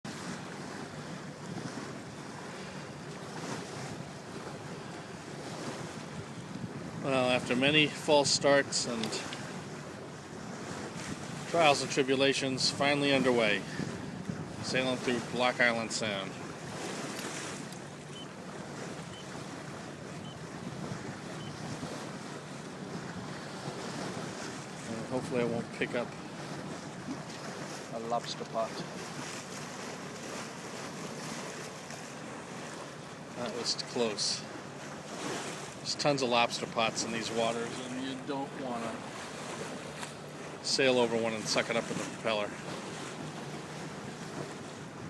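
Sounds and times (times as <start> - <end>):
wind buffeting microphone: 0.1 - 11.7, 12.5 - 27.9, 41.8 - 45.0
boat engine droning: 0.1 - 45.0
water rushing past hull: 0.1 - 45.0
short high beeps: 18.1 - 18.3.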